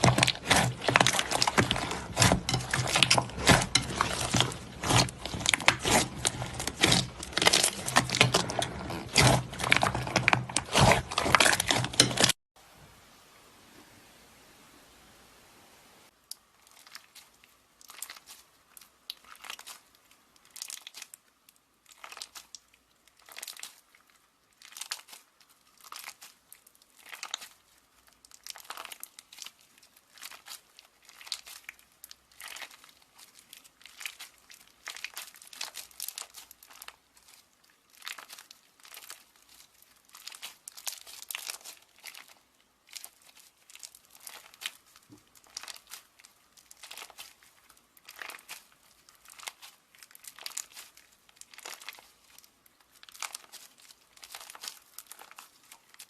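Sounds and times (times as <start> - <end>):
slime squeezed by hand crackling: 28.4 - 56.0.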